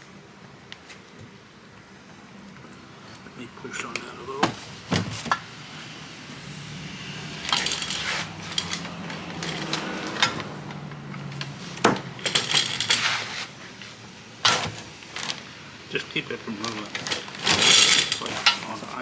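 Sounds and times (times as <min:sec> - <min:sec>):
metal parts and tools clinking: 0:07.2 - 0:13.6, 0:14.4 - 0:19.0.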